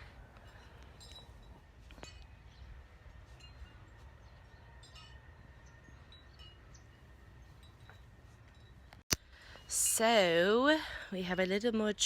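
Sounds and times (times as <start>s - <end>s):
wind chimes tinkling: 0.0s - 10.0s.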